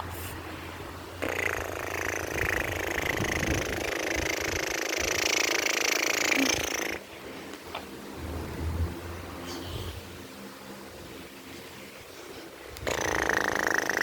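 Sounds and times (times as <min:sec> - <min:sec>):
child making helicopter noise: 0:06.2 - 0:07.0.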